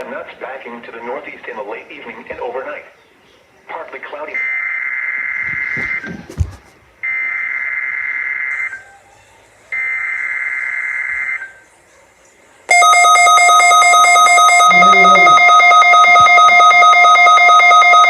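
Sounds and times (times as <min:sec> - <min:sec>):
buzzing data bursts: 0:12.7 - 0:18.0
steady warning alarm tone: 0:12.7 - 0:18.0.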